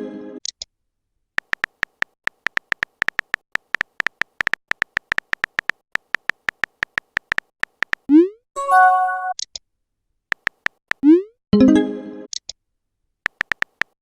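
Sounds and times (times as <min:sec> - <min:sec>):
phone keyboard typing clicks: 0:01.4 - 0:08.1, 0:10.3 - 0:11.1, 0:13.3 - 0:14.0.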